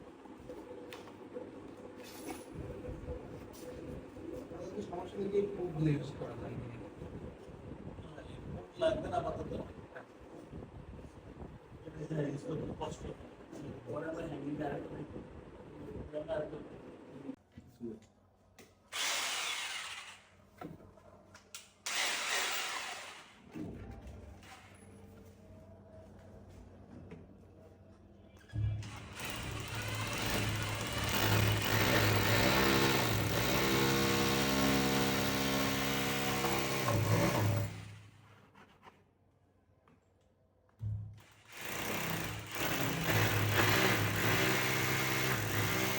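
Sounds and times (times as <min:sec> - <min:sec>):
power drill running: 0:18.9 - 0:20.3, 0:21.9 - 0:23.4, 0:28.8 - 0:37.9, 0:41.4 - 0:45.9.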